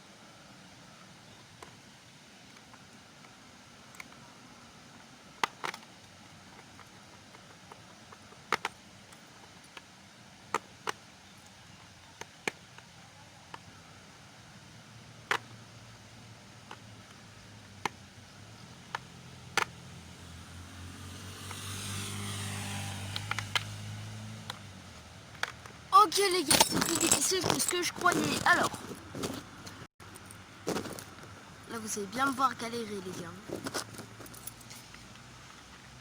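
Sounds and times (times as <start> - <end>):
car passing by: 19.1 - 25.3.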